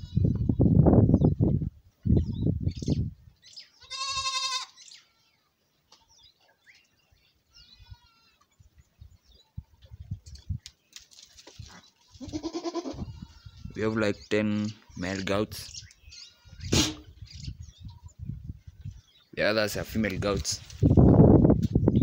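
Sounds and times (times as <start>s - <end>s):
goats bleating: 3.8s - 5.4s, 12.2s - 13.8s.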